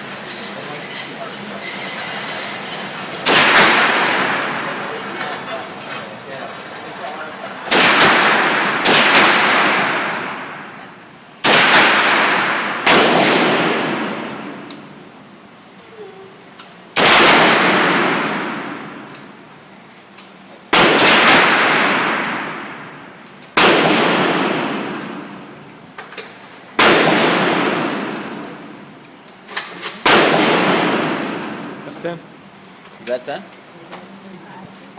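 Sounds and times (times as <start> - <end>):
gunshots with ringing echo: 3.2 - 4.9, 7.7 - 10.7, 11.4 - 14.7, 17.0 - 19.0, 20.7 - 23.0, 23.6 - 25.5, 26.8 - 28.8, 30.0 - 31.8.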